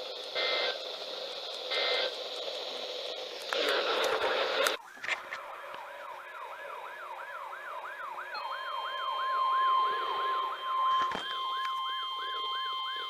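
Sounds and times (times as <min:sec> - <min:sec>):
electronic siren sweeping: 0:04.8 - 0:13.0
steady high-pitched alert tone: 0:08.4 - 0:13.0.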